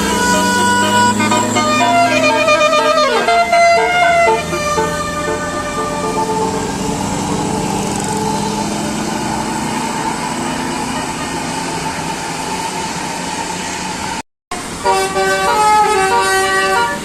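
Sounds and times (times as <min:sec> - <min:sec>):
multi-tone air horn melody: 0:00.0 - 0:09.2, 0:14.6 - 0:17.0
vehicle rumble: 0:00.0 - 0:17.0.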